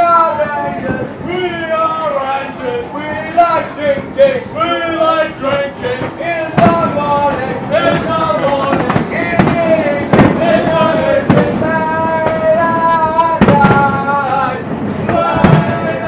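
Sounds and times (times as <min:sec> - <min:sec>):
fireworks bursting: 0:05.4 - 0:16.0.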